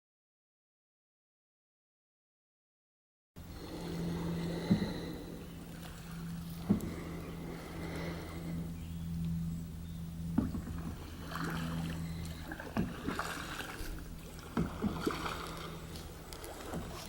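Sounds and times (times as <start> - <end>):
light water noise: 3.4 - 17.0
steady low hum: 3.4 - 17.0
knocks against boat hull: 10.3 - 11.0, 14.5 - 15.3.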